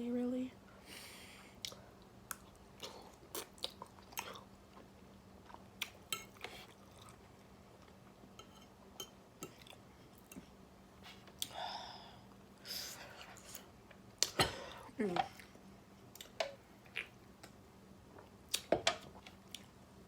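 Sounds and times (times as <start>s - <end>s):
person chewing food: 1.6s - 8.1s, 9.4s - 10.6s, 16.1s - 17.5s, 18.2s - 19.7s.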